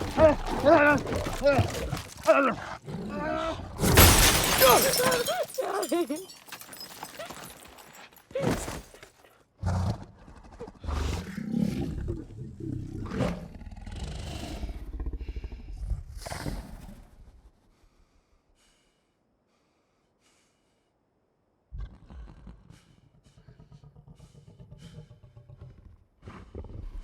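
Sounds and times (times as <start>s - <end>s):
werewolf roaring and snarling: 0.0s - 6.0s.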